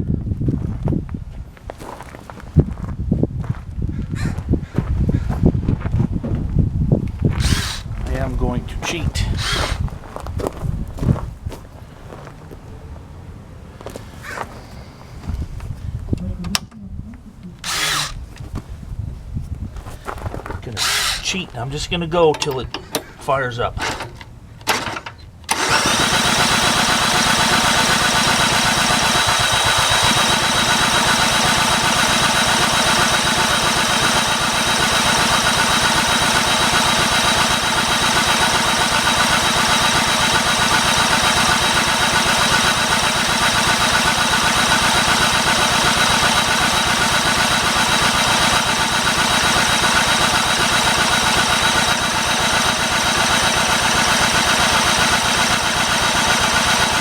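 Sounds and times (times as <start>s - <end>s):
small gasoline engine running: 7.4s - 9.9s, 17.6s - 18.2s, 20.7s - 22.6s, 23.8s - 57.0s.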